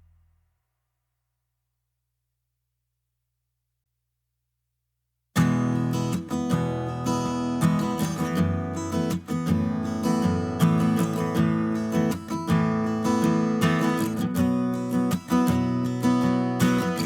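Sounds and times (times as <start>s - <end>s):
strummed acoustic guitar chords: 5.4s - 17.0s.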